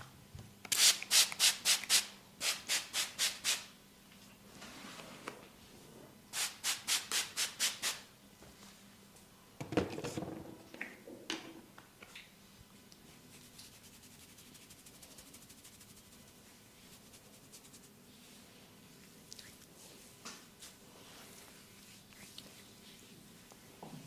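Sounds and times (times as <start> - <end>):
hands rubbing skin and hair: 13.1 - 18.6, 19.4 - 23.8.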